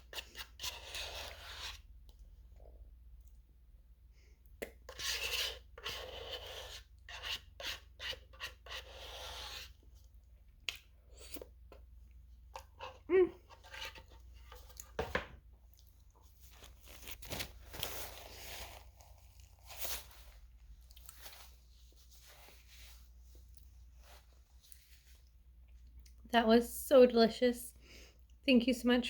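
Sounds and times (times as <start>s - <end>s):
spoon scraping ice cream: 0.0s - 1.9s, 4.6s - 9.8s.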